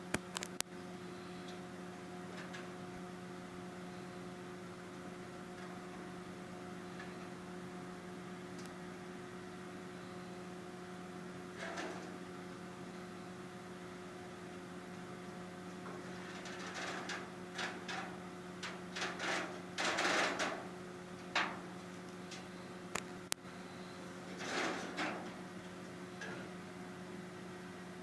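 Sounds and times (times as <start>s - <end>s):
electrical hum: 0.0s - 28.0s.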